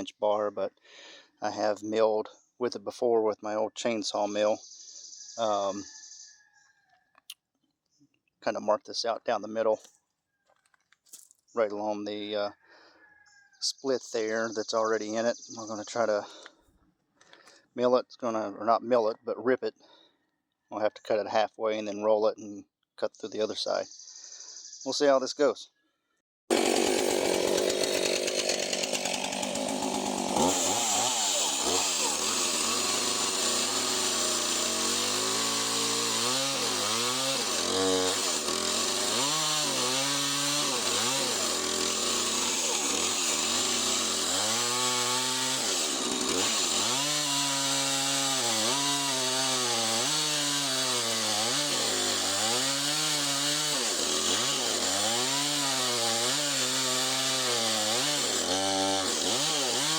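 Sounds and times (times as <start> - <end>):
chainsaw cutting log: 26.5 - 59.9.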